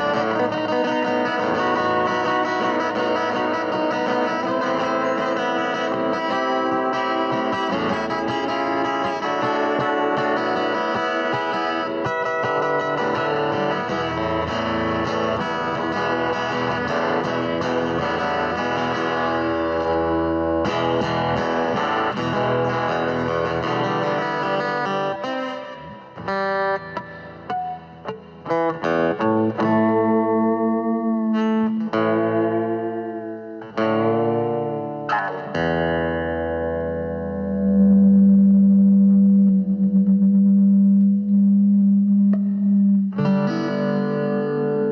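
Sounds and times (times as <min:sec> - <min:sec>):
instrumental music: 0:00.0 - 0:44.9.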